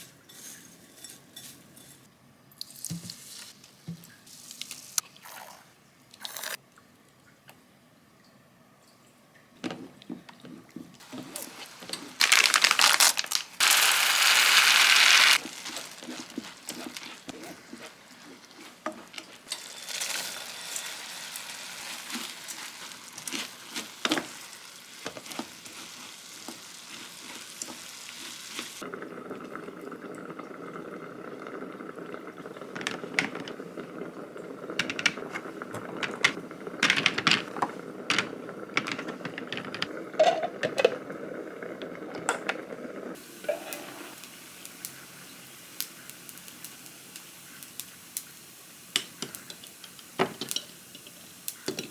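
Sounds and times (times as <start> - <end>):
utensil scraping a pan: 0.0 - 2.1, 13.6 - 28.8
food sizzling in a frying pan: 11.0 - 28.9, 43.1 - 51.9.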